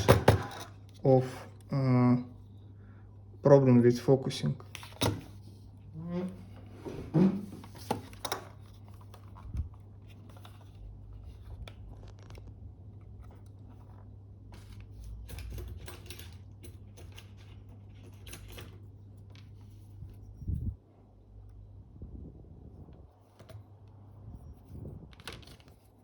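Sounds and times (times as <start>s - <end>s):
low electrical hum: 0.0s - 26.0s.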